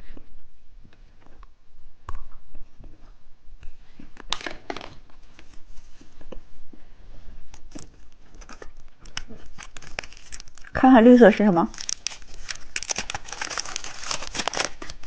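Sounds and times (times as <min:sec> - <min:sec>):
plastic packaging crinkling: 0:07.6 - 0:15.0.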